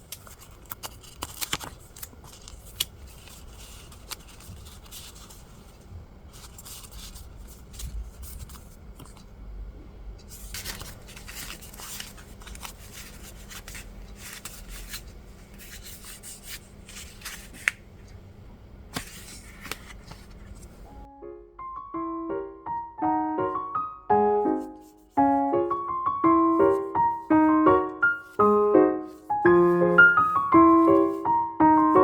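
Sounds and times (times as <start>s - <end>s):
paper rustling and crinkling: 0.0s - 9.4s, 10.2s - 18.2s, 18.9s - 21.1s, 26.4s - 32.0s.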